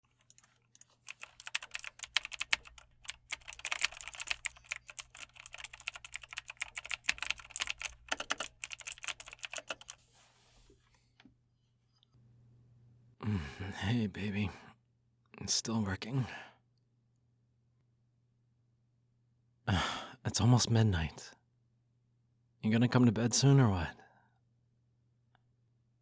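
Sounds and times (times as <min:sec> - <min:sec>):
fast keyboard typing: 0:00.0 - 0:10.0.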